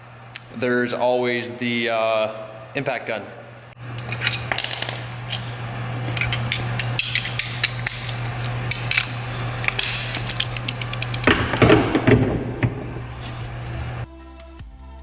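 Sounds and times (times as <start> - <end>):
steady low hum: 3.5 - 14.1
steel hand tools clinking: 3.8 - 11.6.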